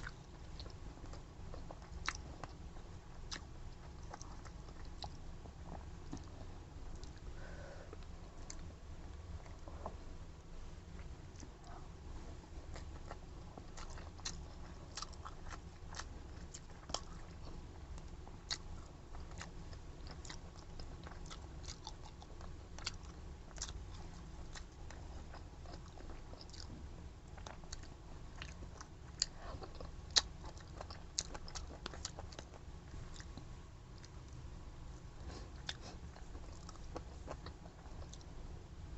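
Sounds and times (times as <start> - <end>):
person chewing: 0.0 - 2.7, 12.6 - 34.4, 35.2 - 38.3.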